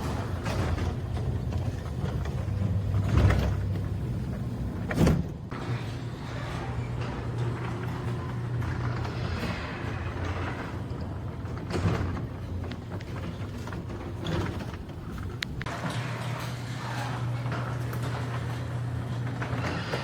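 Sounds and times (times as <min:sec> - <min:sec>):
garage door opener humming: 0:00.0 - 0:15.7
door rattling: 0:10.1 - 0:15.7.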